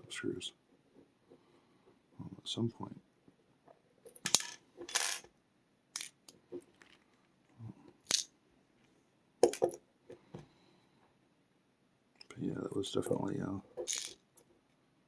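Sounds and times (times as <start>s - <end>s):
small metal parts clinking: 4.0s - 5.3s, 6.0s - 7.1s, 8.0s - 8.3s, 9.4s - 9.8s, 13.8s - 14.2s.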